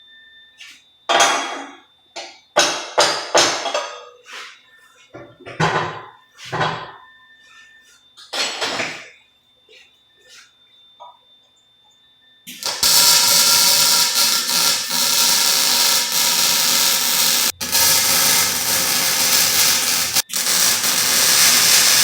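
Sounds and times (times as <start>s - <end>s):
hammer striking steel: 12.6s - 22.0s.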